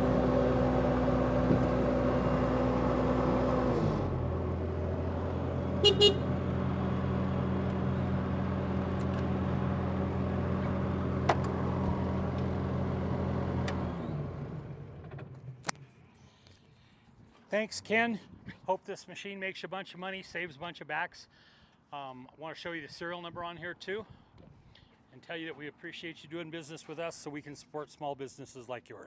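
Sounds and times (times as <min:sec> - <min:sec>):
diesel engine running: 0:00.0 - 0:15.6
engine shutting off: 0:00.0 - 0:15.8
short beeps: 0:05.8 - 0:06.2.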